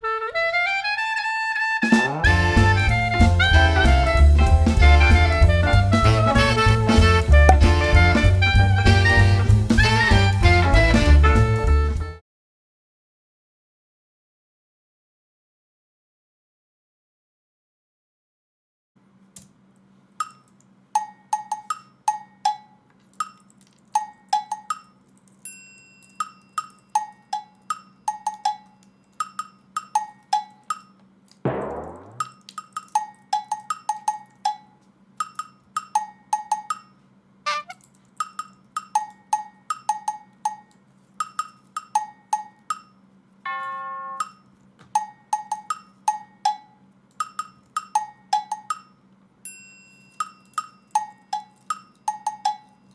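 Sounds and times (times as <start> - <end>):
bright percussive tune: 7.5 - 8.0, 31.5 - 32.4.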